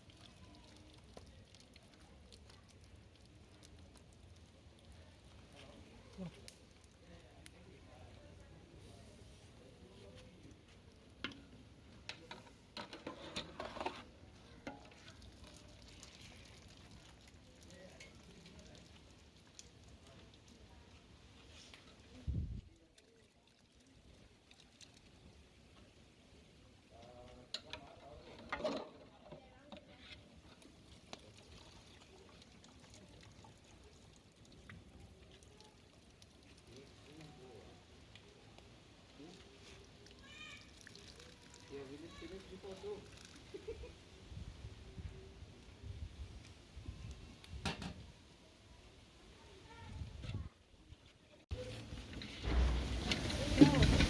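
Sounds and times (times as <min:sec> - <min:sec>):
metal utensil scraping in pot: 0:12.1 - 0:15.0.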